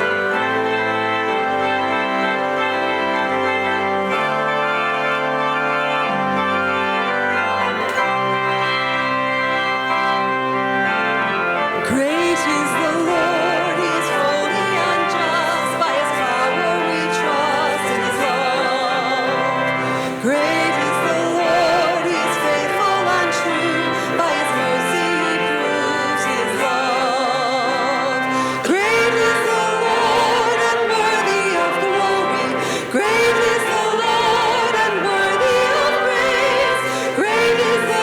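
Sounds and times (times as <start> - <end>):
organ playing held chords: 0.0 - 38.0
person singing with vibrato: 11.7 - 38.0.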